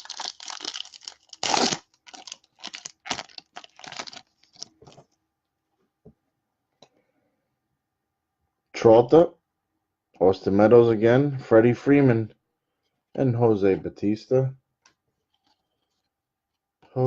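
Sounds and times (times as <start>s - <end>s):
foil wrapper tearing and crinkling: 0.0s - 4.7s.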